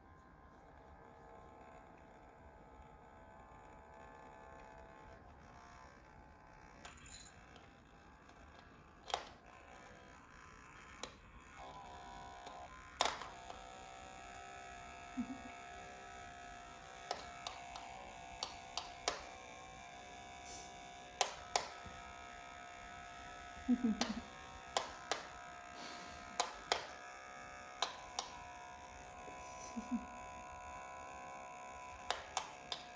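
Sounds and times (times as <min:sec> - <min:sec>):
electric nail trimmer buzzing: 0:00.6 - 0:32.9
sharp clicks: 0:09.0 - 0:09.4, 0:12.4 - 0:13.7, 0:16.8 - 0:19.7, 0:20.7 - 0:27.1, 0:27.8 - 0:28.6, 0:31.9 - 0:32.9.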